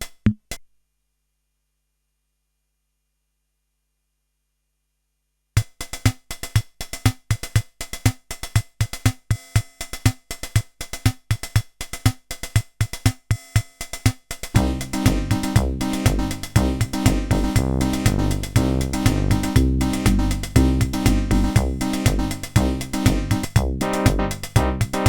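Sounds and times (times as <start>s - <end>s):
drum machine beat: 5.6s - 25.0s.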